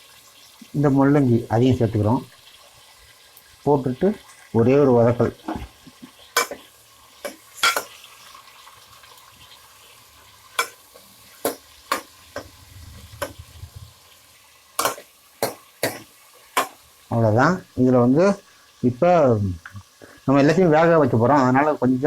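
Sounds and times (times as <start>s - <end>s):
faint sizzle: 0.0s - 22.0s
spoon scraping and knocking a pan: 5.4s - 8.0s, 10.5s - 13.6s, 14.8s - 16.9s.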